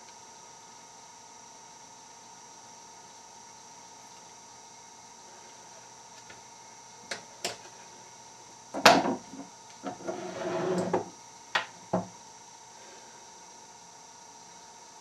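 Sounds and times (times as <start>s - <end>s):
rattling scrape: 9.8s - 11.0s.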